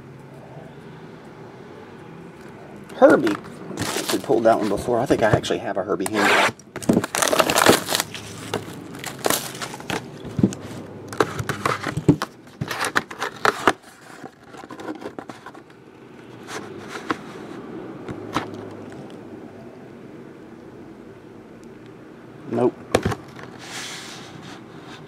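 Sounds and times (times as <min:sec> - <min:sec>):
photographs rustling: 0:03.0 - 0:05.5, 0:06.1 - 0:15.8.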